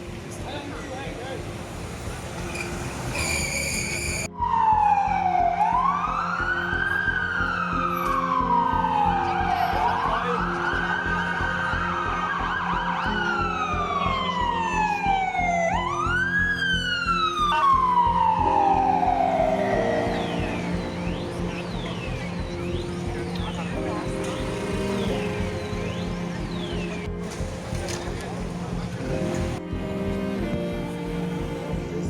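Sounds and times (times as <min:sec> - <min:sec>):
traffic hum: 0:00.0 - 0:32.0
emergency vehicle siren wailing: 0:03.1 - 0:28.2
steady high tone: 0:16.7 - 0:27.1.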